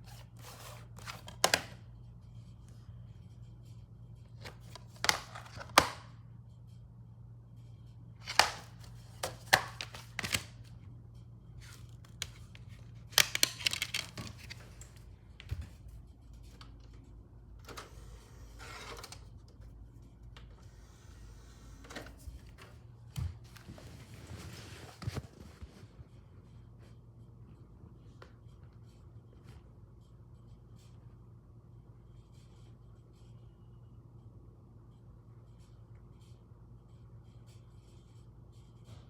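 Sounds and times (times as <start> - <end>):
rustling handling noises: 0.0 - 1.9, 4.3 - 6.1, 8.2 - 10.8, 11.5 - 16.7, 21.9 - 26.0
low electrical hum: 0.0 - 39.0.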